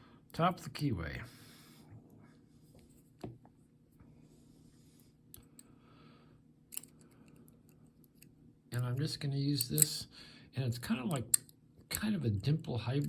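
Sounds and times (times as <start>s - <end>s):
lock pick clicking and scraping: 6.7s - 7.1s.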